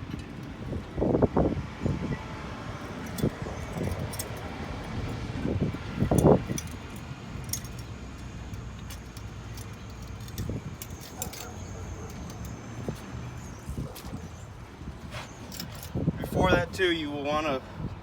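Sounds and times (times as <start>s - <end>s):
metallic clinking of tools: 2.9s - 5.2s, 6.0s - 14.5s, 15.1s - 16.0s.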